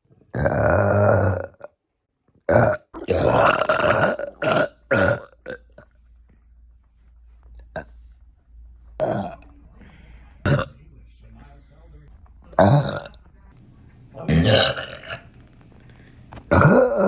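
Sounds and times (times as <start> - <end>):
loud deep burping: 0.3 - 1.6, 2.5 - 5.7, 10.5 - 10.7, 12.6 - 13.1, 14.2 - 17.0.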